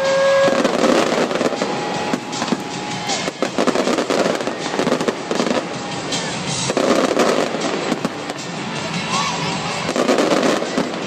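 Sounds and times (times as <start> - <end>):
rising firework whistle: 0.0 - 6.0
fireworks crackling and popping: 0.0 - 11.0.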